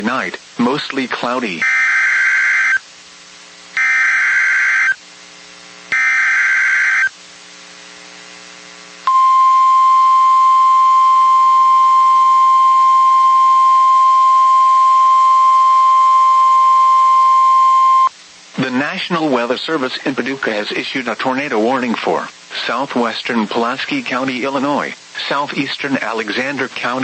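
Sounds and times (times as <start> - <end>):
steady warning alarm tone: 1.6 - 2.8, 3.8 - 5.0, 5.9 - 7.1, 9.1 - 18.1
buzzy data bursts: 3.7 - 5.0, 5.8 - 7.1.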